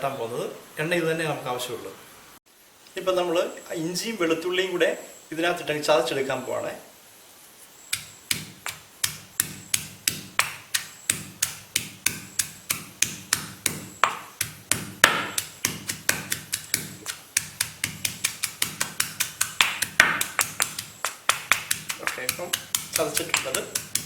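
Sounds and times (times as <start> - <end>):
pestle pounding in a mortar: 7.9 - 24.0.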